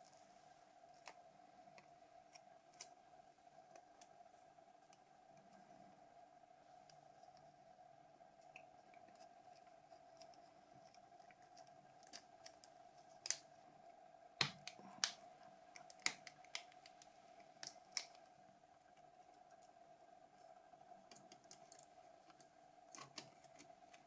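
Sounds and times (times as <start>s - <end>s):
faint steady hum: 0.0s - 24.0s
small plastic parts clicking: 8.4s - 13.5s.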